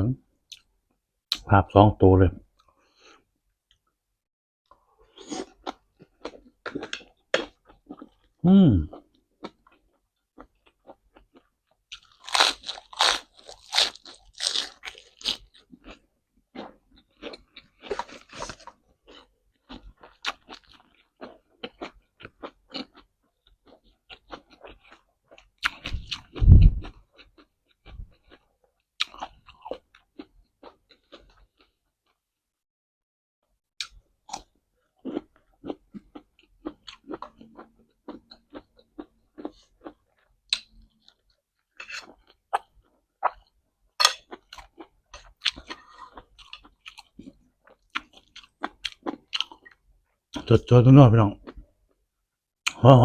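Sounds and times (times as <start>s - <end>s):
crunching bites of raw vegetables: 11.4s - 16.0s.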